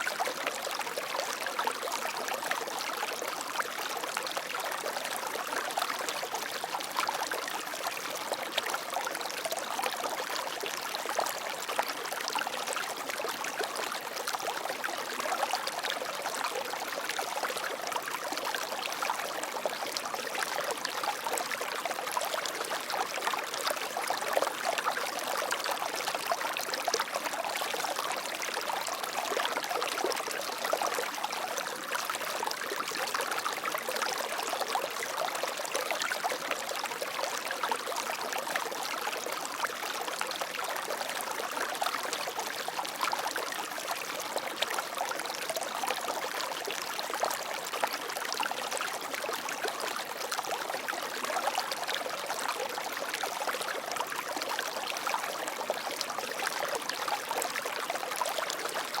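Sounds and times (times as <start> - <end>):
water flowing over rocks: 0.0 - 59.0.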